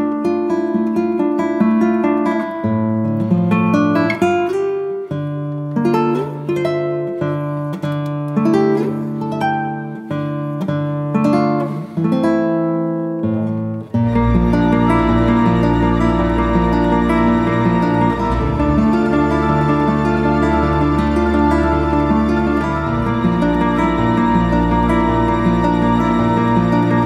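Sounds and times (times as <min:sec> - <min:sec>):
acoustic guitar picked and strummed: 0:00.0 - 0:27.0
deep sustained bass: 0:14.2 - 0:27.0.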